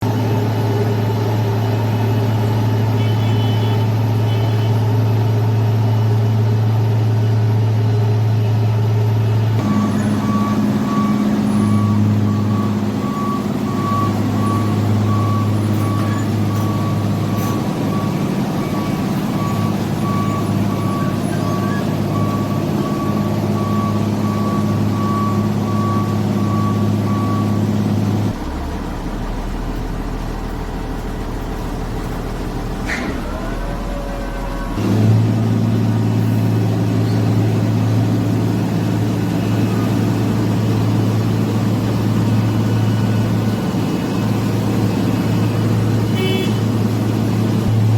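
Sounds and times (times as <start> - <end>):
heavy diesel engine running: 0.0 - 47.9
reversing alarm beeping: 9.6 - 28.5.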